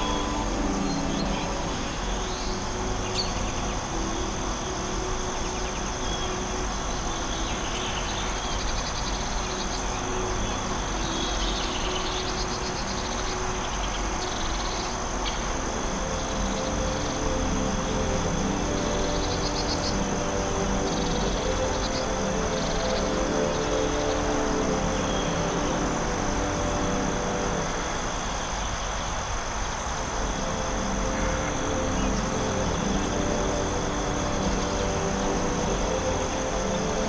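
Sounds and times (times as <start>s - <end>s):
high-pitched insect drone: 0.0s - 37.0s
steady hiss: 0.0s - 37.0s.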